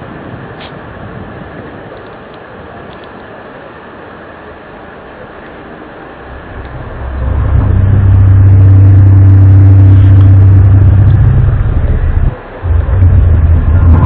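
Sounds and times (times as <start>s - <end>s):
deep droning hum: 6.1s - 14.0s.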